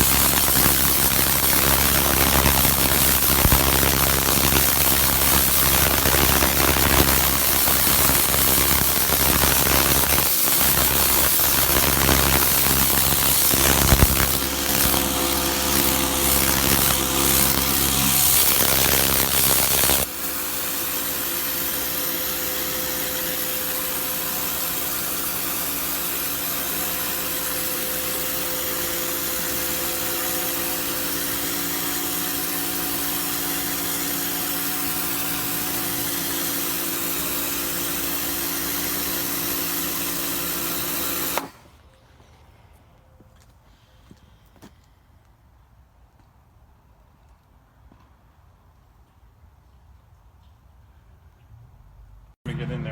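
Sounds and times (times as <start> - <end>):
pressure washer motor humming: 0.0 - 41.7.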